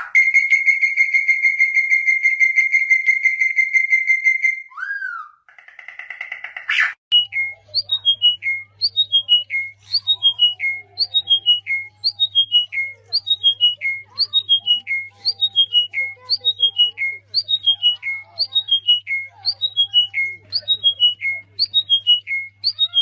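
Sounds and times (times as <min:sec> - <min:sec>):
bird-like chirping: 0:04.8 - 0:23.0.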